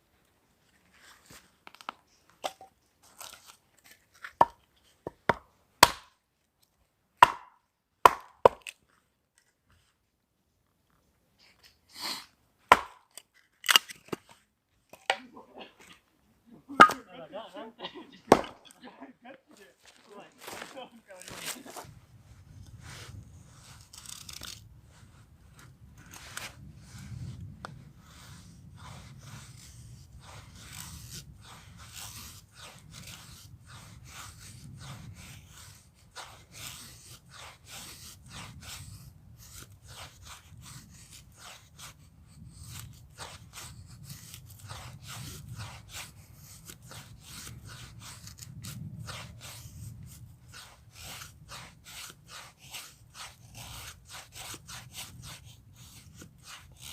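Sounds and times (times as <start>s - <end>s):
wood crunching and scraping: 19.5s - 21.9s.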